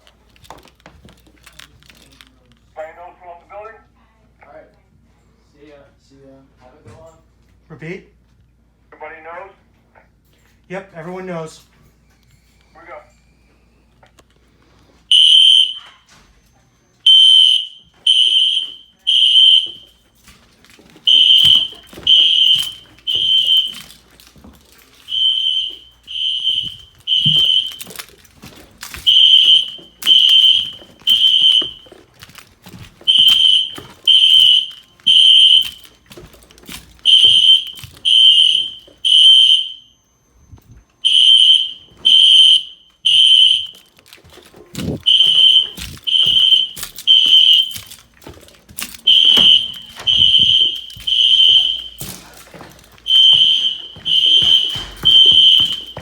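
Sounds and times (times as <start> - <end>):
fire alarm horns blasting: 15.0 - 56.0.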